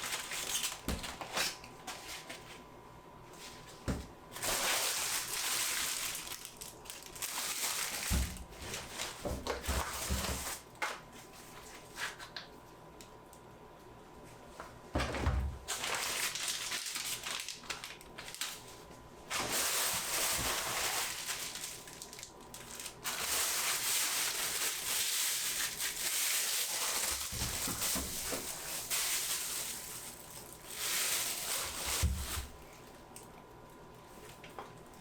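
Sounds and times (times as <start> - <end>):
packaging crinkling and rustling: 0.0 - 2.6, 3.4 - 10.7, 15.6 - 32.8.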